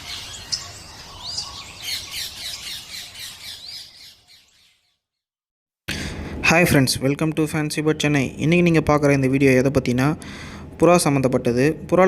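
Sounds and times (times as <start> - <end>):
small birds chirping and squawking: 0.0 - 5.1.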